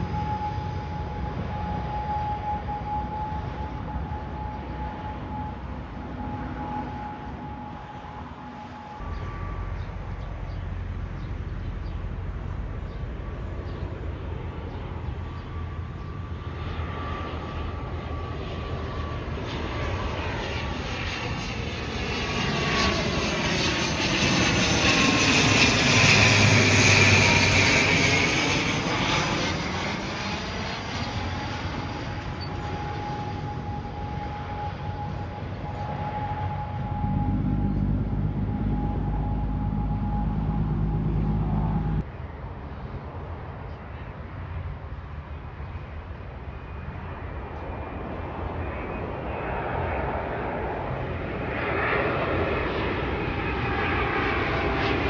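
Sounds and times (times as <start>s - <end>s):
steady high whine: 0.0s - 43.0s
jet airliner passing: 0.0s - 55.0s.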